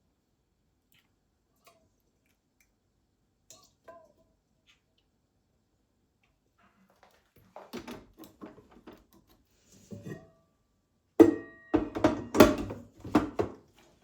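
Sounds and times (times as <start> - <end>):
household objects knocking and clinking: 11.2 - 13.6.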